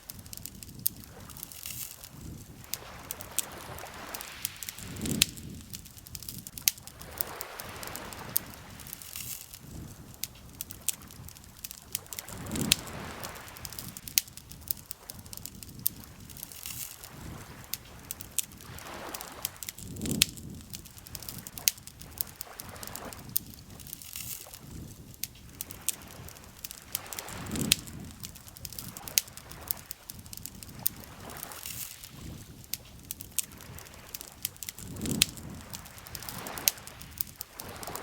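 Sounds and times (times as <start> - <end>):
campfire crackling and popping: 0.0 - 38.0
lake water lapping: 1.0 - 6.1, 10.1 - 14.0, 16.0 - 24.6.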